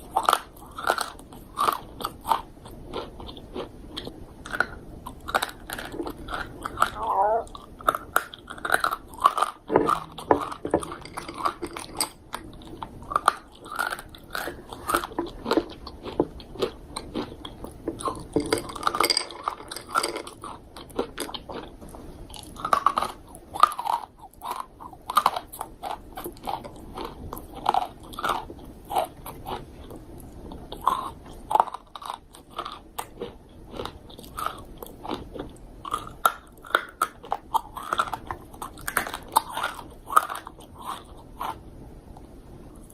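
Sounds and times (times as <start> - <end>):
crunching dried fruit: 0.0 - 41.7.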